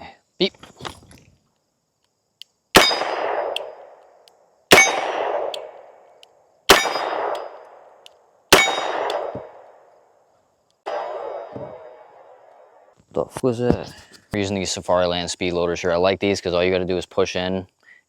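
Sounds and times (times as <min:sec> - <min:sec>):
revolver shots with ringing tail: 0:02.8 - 0:03.8, 0:04.7 - 0:05.8, 0:06.7 - 0:07.6, 0:08.5 - 0:09.6.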